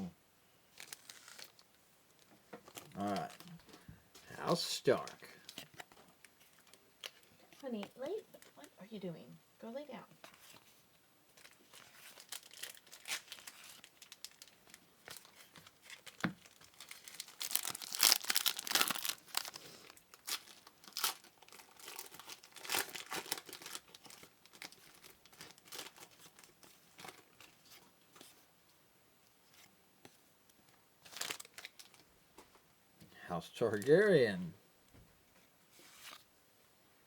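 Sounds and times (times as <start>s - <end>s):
card pack wrappers tearing and crinkling: 0.8s - 1.7s, 2.6s - 3.7s, 11.4s - 27.8s, 31.0s - 32.0s.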